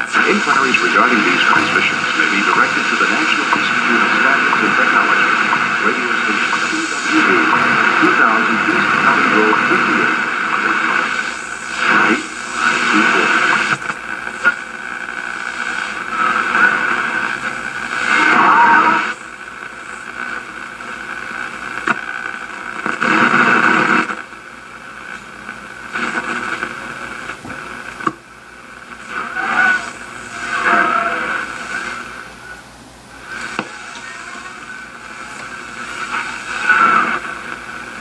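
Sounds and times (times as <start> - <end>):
muffled broadcast voices: 0.0 - 38.0
radio static hiss: 0.0 - 38.0.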